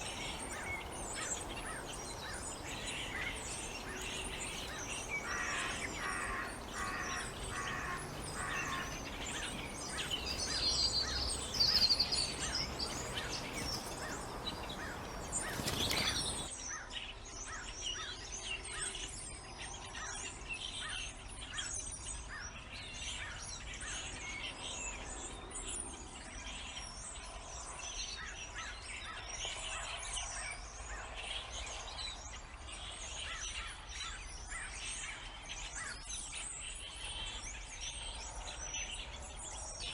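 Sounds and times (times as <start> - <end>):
birds chirping and calling: 0.0 - 16.5.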